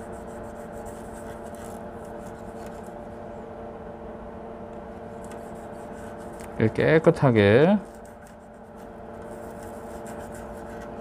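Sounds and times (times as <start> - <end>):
gauze rubbing on circuit board: 0.0 - 2.9, 5.2 - 6.6, 7.6 - 11.0.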